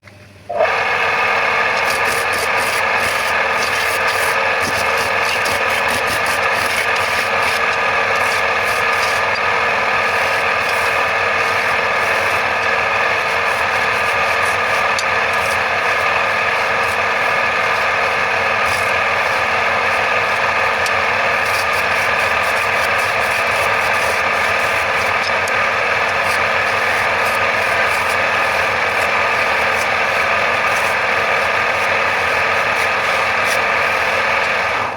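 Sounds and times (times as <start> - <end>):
lathe tool scraping spinning wood: 0.5 - 34.9.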